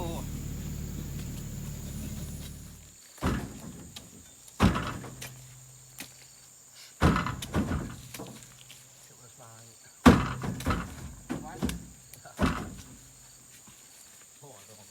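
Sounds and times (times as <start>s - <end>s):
truck engine running: 0.0s - 4.0s
heavy thuds: 0.0s - 5.5s, 7.0s - 8.4s, 10.1s - 13.1s.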